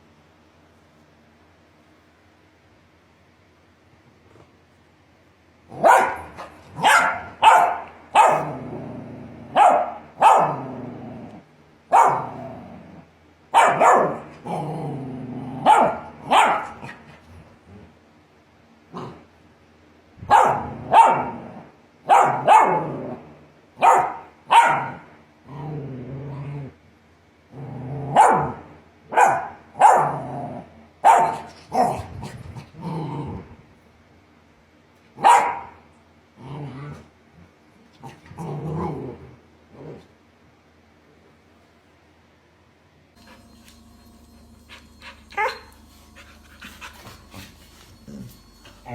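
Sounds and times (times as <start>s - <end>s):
dog barking: 5.8s - 8.6s, 9.5s - 10.6s, 11.9s - 12.4s, 13.5s - 14.3s, 15.6s - 17.0s, 20.3s - 21.4s, 22.1s - 22.9s, 23.8s - 25.1s, 28.2s - 30.3s, 31.0s - 32.1s, 35.2s - 35.8s
dog growling: 8.3s - 9.6s, 10.4s - 11.5s, 12.2s - 13.1s, 14.3s - 16.0s, 18.9s - 19.3s, 25.4s - 26.8s, 27.5s - 28.2s, 31.8s - 33.7s, 36.4s - 37.1s, 38.0s - 40.1s, 44.6s - 48.9s.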